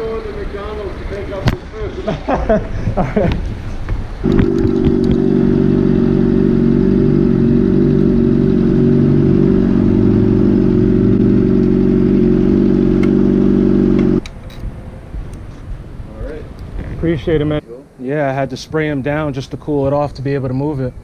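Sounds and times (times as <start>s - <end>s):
car engine idling: 4.2s - 14.2s.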